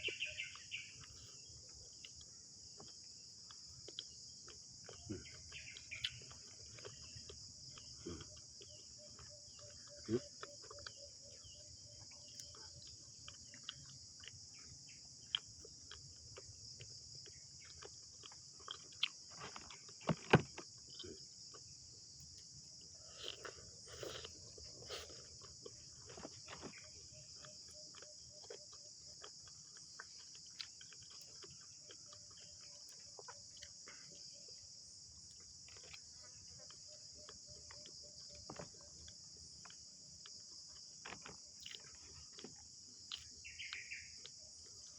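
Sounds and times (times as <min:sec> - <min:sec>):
crickets and insects chirping: 0:00.0 - 0:44.9
clicks and knocks of handling food: 0:12.0 - 0:22.5, 0:24.3 - 0:34.4, 0:35.3 - 0:43.4.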